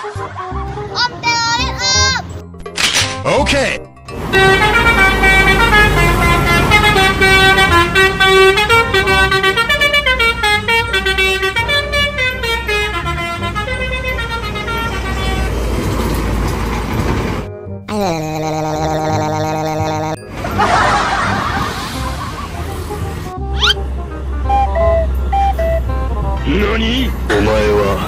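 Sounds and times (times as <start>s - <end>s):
bus musical air horn melody: 4.1s - 15.9s, 21.7s - 27.1s
bus engine rumble: 4.1s - 17.8s, 18.9s - 28.0s.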